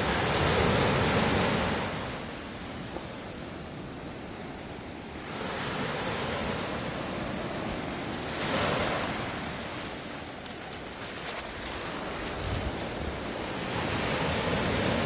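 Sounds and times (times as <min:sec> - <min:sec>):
sea waves washing in: 0:00.0 - 0:15.0.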